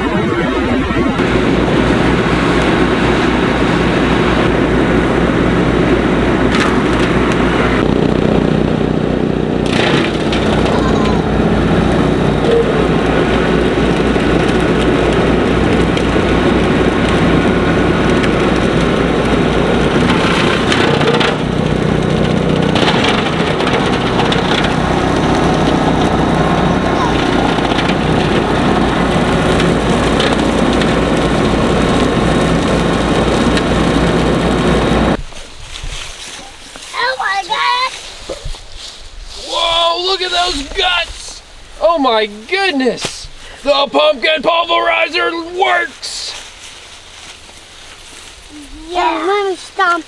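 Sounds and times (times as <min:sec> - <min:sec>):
rotary cutter blades spinning: 0:00.0 - 0:35.2
sharp cracks: 0:00.0 - 0:35.2
tractor diesel engine under load: 0:00.0 - 0:35.2, 0:43.6 - 0:50.0.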